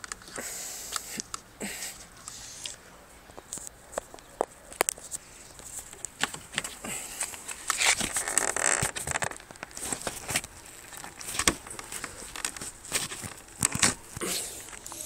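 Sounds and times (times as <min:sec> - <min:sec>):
plastic and rubber scraping: 0:04.8 - 0:15.0.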